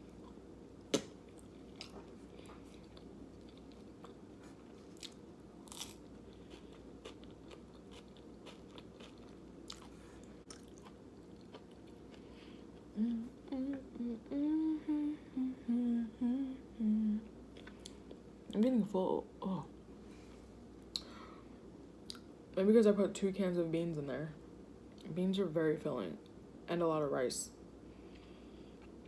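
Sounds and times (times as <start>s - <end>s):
person chewing food: 0.1s - 13.8s, 28.1s - 29.0s
woman humming with mouth full: 12.9s - 17.4s.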